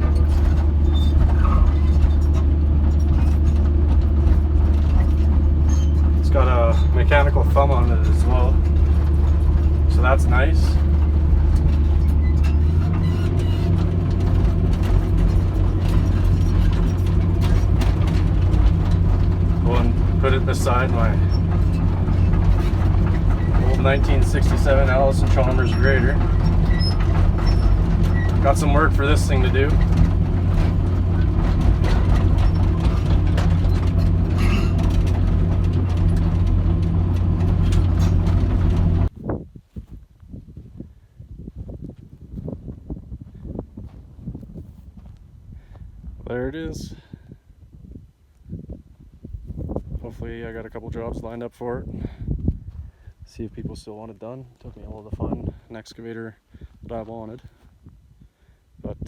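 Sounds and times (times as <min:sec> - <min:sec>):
excavator diesel engine humming: 0:00.0 - 0:39.1
track clicks and rattles: 0:00.0 - 0:39.1.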